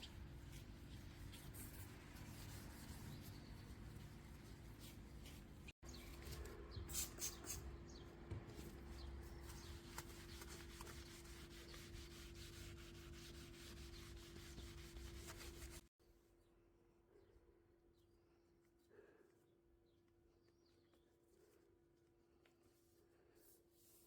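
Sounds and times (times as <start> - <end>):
cloth wiping window glass: 8.5 - 15.8.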